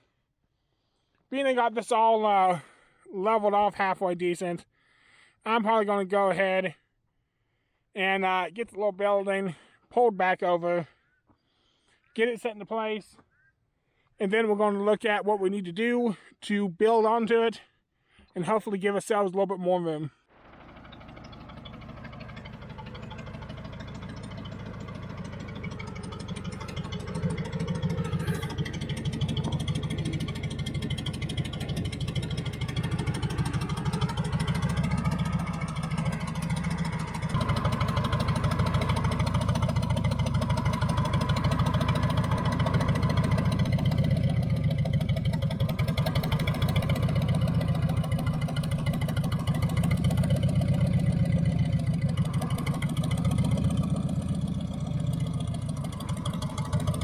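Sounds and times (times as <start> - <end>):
backhoe engine running: 20.3 - 57.0.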